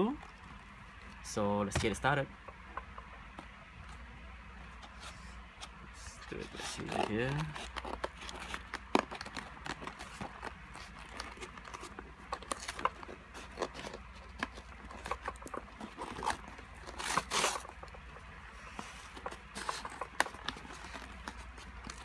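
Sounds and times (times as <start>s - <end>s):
wallet packaging rustling: 0.0s - 22.0s
packaging tearing: 6.4s - 18.0s.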